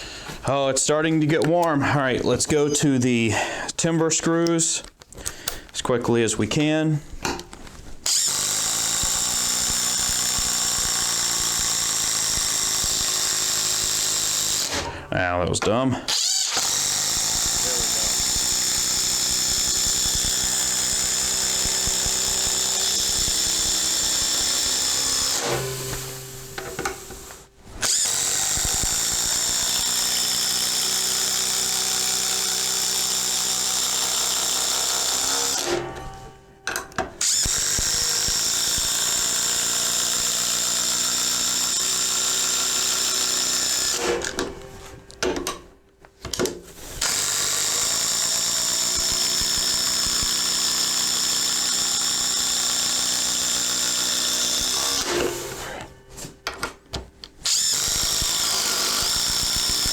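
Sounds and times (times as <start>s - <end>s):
impact driver trigger blips: 7.2s - 14.9s, 16.1s - 30.2s, 37.0s - 40.5s, 46.4s - 51.2s, 57.2s - 59.9s
impact driver driving screws: 8.0s - 15.0s, 16.1s - 36.3s, 37.0s - 45.2s, 46.4s - 56.0s, 57.4s - 59.9s.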